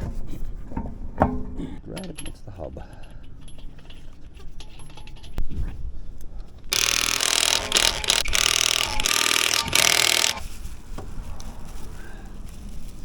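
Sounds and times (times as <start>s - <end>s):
cordless impact wrench running: 6.7s - 10.4s.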